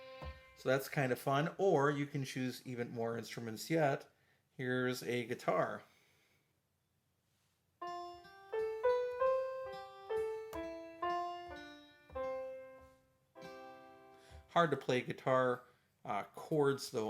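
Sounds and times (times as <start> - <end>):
guitar synth single-note melody: 0.0 - 0.6, 7.8 - 14.4.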